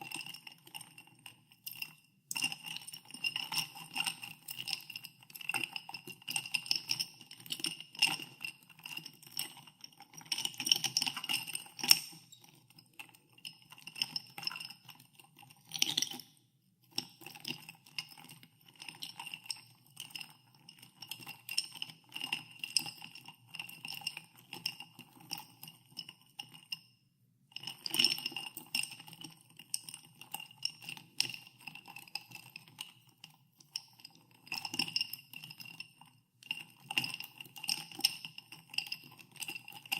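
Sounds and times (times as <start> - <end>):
ice cubes clinking in a glass: 15.6 - 16.2.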